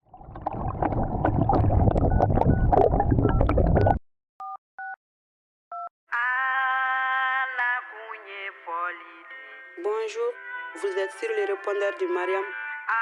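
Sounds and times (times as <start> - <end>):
rough crackling noise: 0.0 - 4.0.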